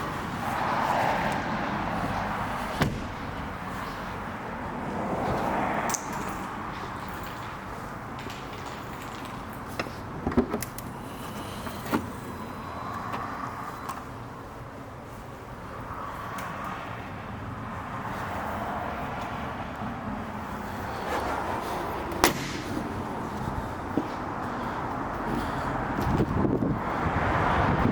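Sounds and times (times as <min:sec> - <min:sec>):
car running noise: 0:00.0 - 0:04.1.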